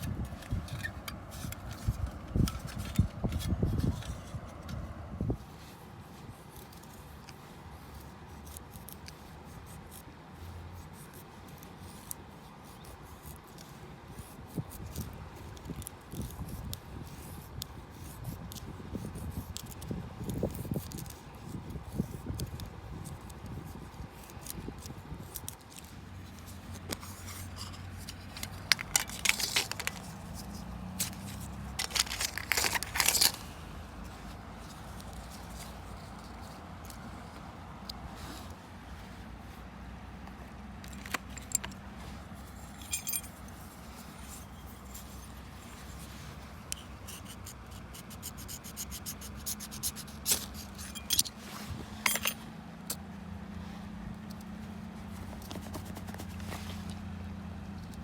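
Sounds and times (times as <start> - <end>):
handling clicks and scrapes: 0.0 - 10.1, 10.9 - 58.0
tearing and crinkling: 24.3 - 37.0.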